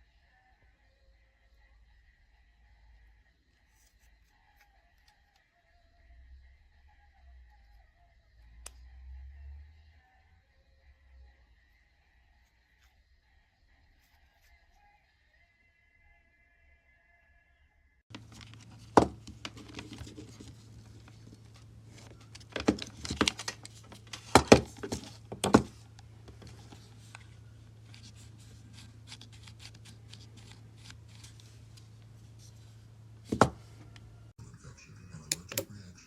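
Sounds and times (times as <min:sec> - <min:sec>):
steady low hum: 0:18.1 - 0:36.0
handling clicks and taps: 0:35.3 - 0:35.7.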